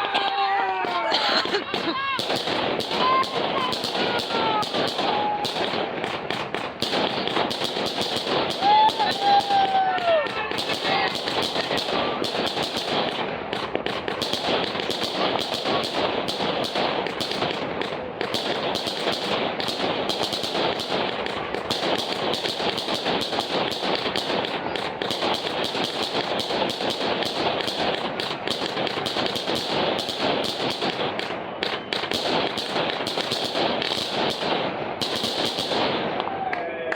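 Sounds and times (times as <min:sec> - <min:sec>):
fireworks crackling: 0:00.0 - 0:34.4.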